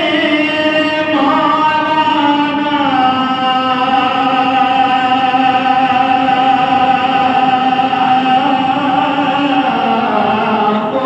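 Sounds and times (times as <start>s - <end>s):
man chanting a long note: 0.0s - 11.0s.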